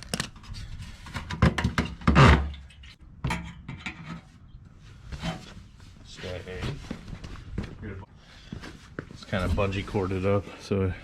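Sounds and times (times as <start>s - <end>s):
fuel tank knocks and scraping: 1.0s - 4.4s.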